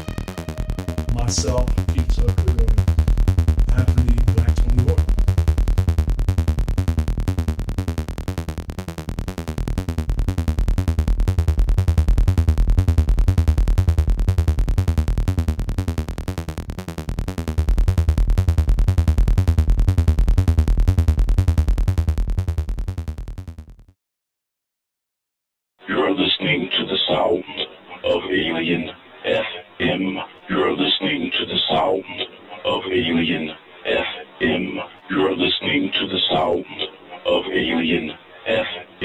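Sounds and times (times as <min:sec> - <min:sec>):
electronic dance music: 0:00.0 - 0:23.6.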